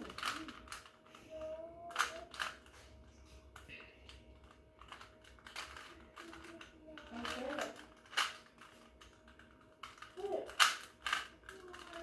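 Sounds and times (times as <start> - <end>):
plastic puzzle cube clicking: 0.0 - 1.0, 9.8 - 12.0.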